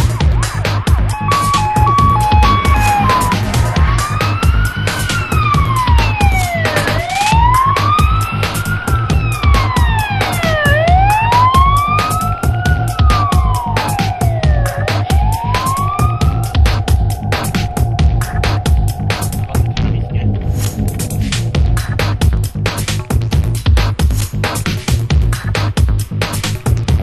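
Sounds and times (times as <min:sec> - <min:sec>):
siren wailing: 0:00.0 - 0:23.5
electronic music with fast beat: 0:00.0 - 0:27.0
steady held tone: 0:01.1 - 0:04.5.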